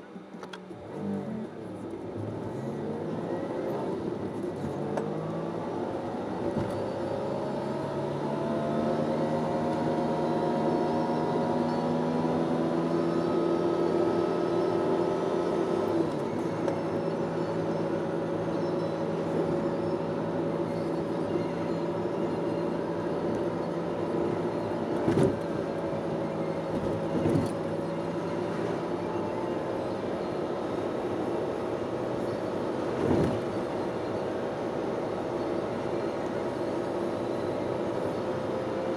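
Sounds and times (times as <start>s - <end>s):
engine droning: 0.0s - 38.9s.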